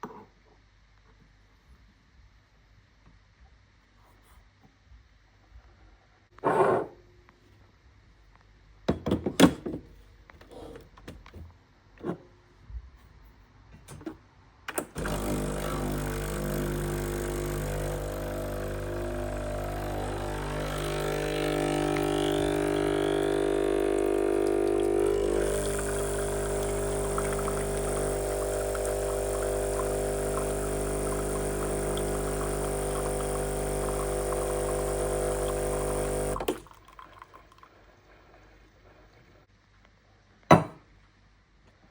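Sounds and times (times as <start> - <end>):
coffee machine motor hum: 14.9 - 36.6
coffee machine hiss: 15.0 - 36.6.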